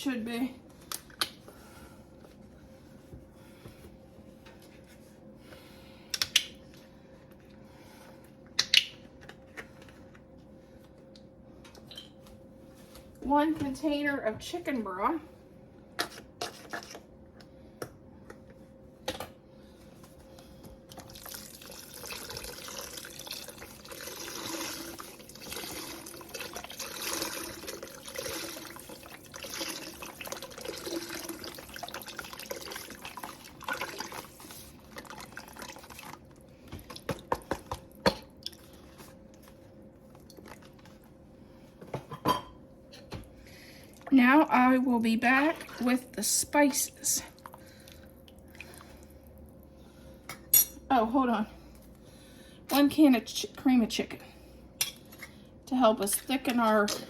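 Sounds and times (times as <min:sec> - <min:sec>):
liquid pouring into a dish: 0:21.0 - 0:36.2.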